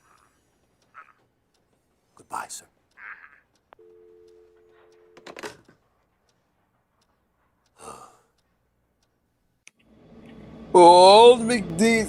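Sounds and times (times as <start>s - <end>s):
telephone dial tone: 3.7s - 5.6s
receiver hung up clatter: 5.2s - 5.7s.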